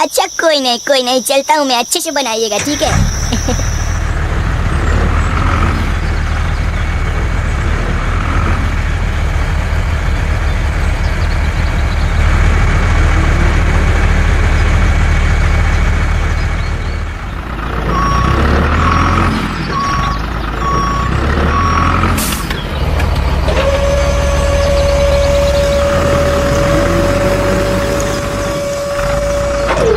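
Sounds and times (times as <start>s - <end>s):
truck engine running: 2.5s - 29.9s
reversing beeps: 2.6s - 4.1s, 17.9s - 22.1s, 23.5s - 29.9s
steady tone: 23.5s - 29.9s.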